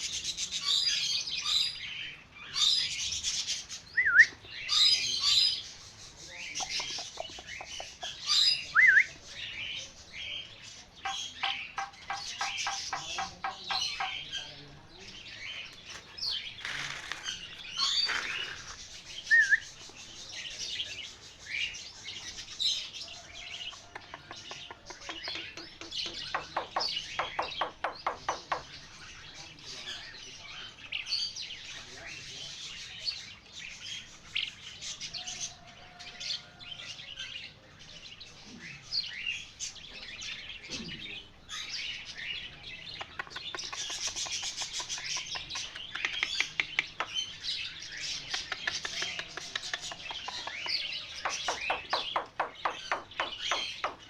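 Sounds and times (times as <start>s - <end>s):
songbird chirping and singing: 0.0s - 54.0s
rapid rattling bird trill: 11.0s - 14.4s, 24.1s - 29.1s, 43.0s - 54.0s.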